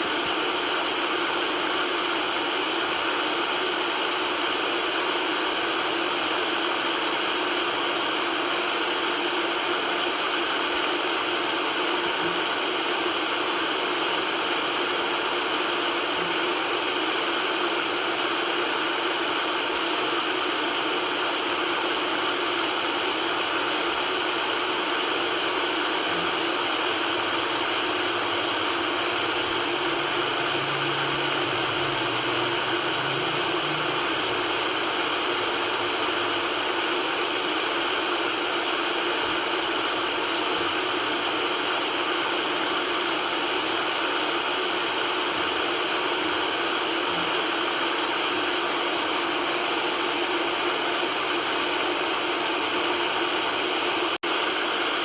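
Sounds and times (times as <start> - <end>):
white noise hiss: 26.1 - 37.1.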